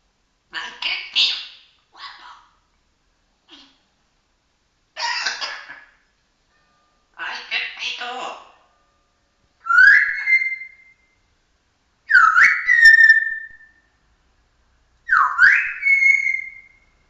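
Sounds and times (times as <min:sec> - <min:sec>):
parrot whistling: 0:09.6 - 0:11.0, 0:12.1 - 0:13.8, 0:15.1 - 0:16.9.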